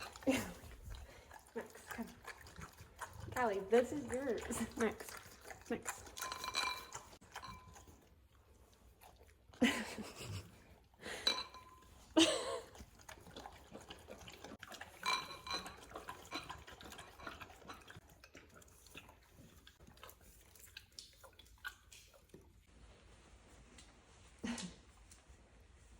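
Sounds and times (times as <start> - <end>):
dogs lapping water: 0.0 - 22.7
bowls clinking: 6.0 - 7.9, 11.2 - 11.9, 15.0 - 17.9.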